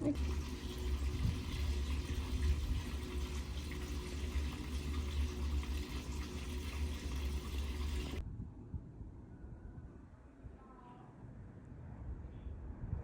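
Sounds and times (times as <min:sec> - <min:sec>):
running water: 0:00.0 - 0:08.2.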